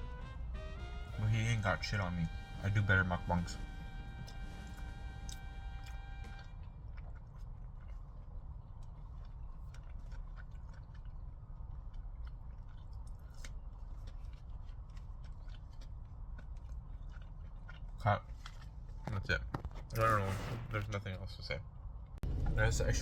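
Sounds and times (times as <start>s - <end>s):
man chewing food: 3.6s - 19.2s
wet mouth clicks and smacks: 6.8s - 18.8s.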